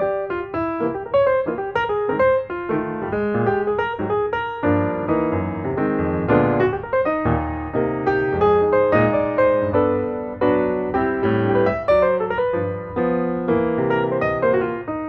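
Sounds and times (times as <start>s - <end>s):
piano melody over chords: 0.0s - 15.0s.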